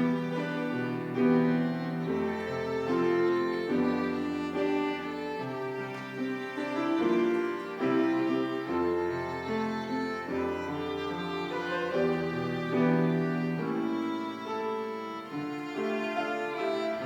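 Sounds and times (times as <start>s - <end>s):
violin playing slow melody: 0.0s - 17.0s.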